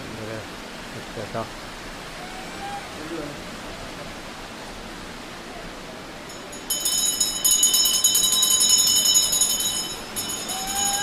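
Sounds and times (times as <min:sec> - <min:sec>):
small bell ringing rapidly: 0:06.3 - 0:11.0.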